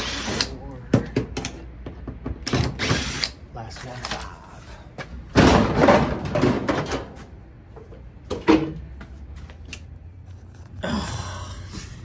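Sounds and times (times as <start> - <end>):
metal panel clunk: 5.3 - 7.2.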